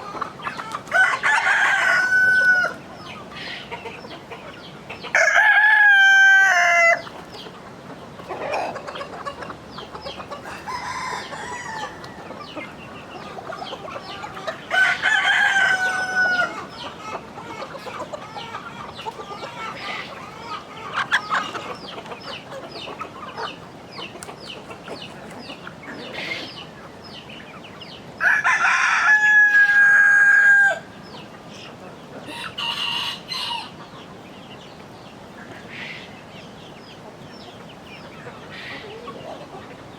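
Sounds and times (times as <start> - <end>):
hens clucking: 0.0 - 39.9
rooster crowing: 0.9 - 2.8, 5.1 - 7.0, 10.5 - 12.2, 14.7 - 16.6, 28.2 - 30.9.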